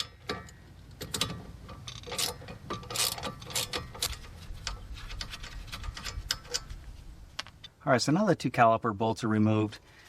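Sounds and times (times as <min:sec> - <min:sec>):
ratchet wrench clicking: 0:01.9 - 0:04.2.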